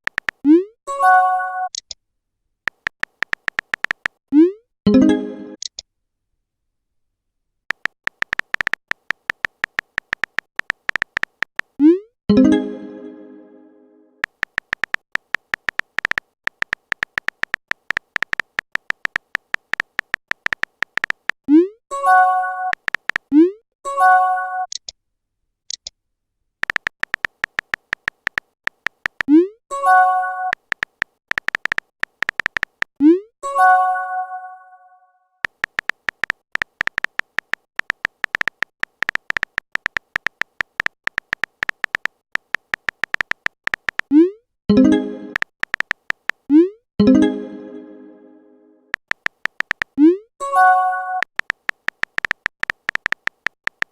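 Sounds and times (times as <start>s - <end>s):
phone keyboard typing clicks: 0.0s - 0.6s, 2.7s - 4.2s, 7.7s - 11.9s, 14.2s - 21.4s, 22.7s - 23.4s, 26.6s - 33.0s, 35.4s - 46.6s, 48.9s - 50.2s, 51.2s - 53.9s.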